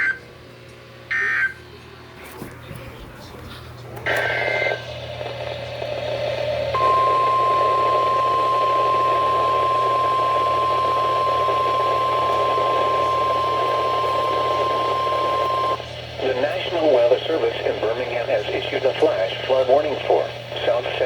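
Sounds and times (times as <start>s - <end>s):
steady warning alarm tone: 1.1s - 1.6s, 4.0s - 5.0s, 6.5s - 18.2s
radio receiver hiss: 4.0s - 21.0s.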